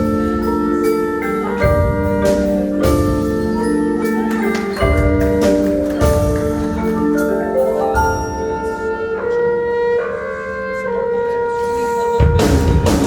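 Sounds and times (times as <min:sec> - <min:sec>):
mallet percussion holding chords: 0:00.0 - 0:09.7.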